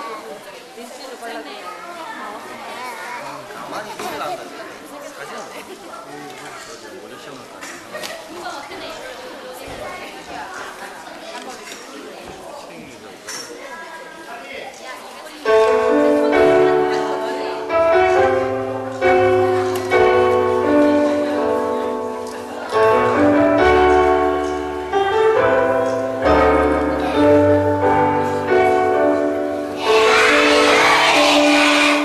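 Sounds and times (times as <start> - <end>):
slow piano music: 15.5 - 32.0.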